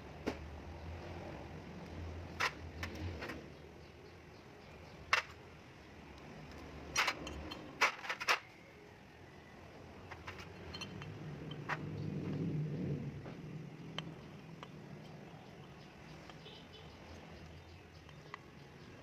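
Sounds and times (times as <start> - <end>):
metal tools clicking and knocking: 5.0 - 5.5, 6.2 - 8.7, 9.9 - 12.5.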